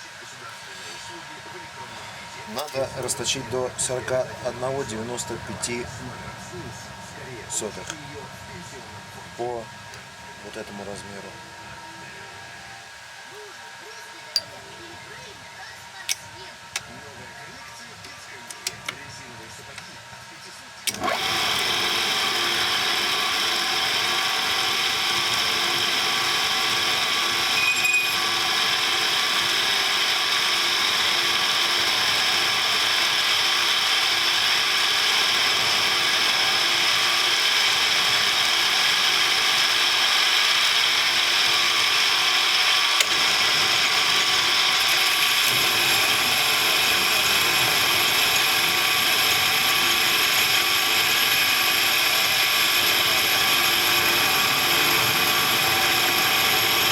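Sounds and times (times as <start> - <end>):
machine tool geared whine: 0.0 - 56.9.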